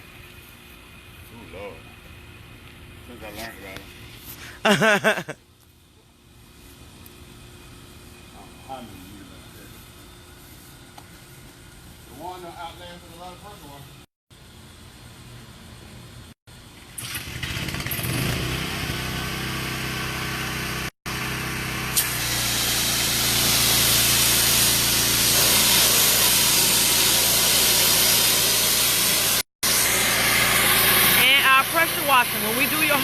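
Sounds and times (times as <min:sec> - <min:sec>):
pressure washer engine hum: 0:16.7 - 0:33.0
high-pressure water spray hiss: 0:21.9 - 0:33.0.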